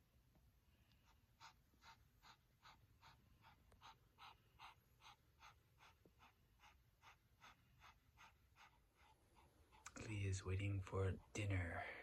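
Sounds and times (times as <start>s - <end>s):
dog panting: 1.0s - 10.1s.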